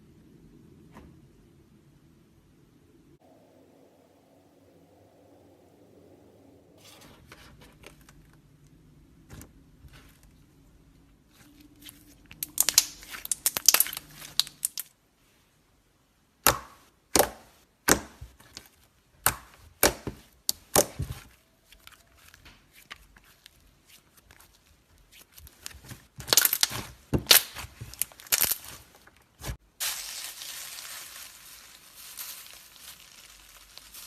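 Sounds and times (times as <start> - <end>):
slime crackling and popping: 11.8 - 14.9, 16.4 - 34.0.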